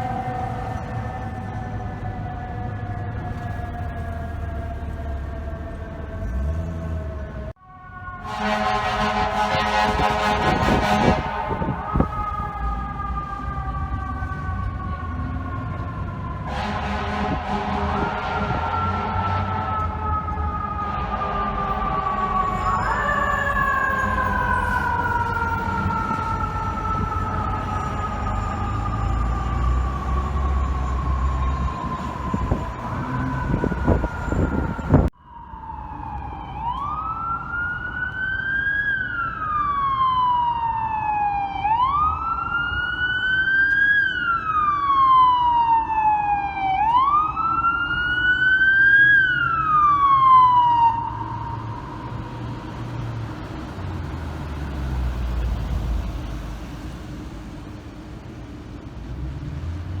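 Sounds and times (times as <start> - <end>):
fire truck siren wailing: 0.0 - 60.0
traffic and engine rumble: 0.0 - 60.0.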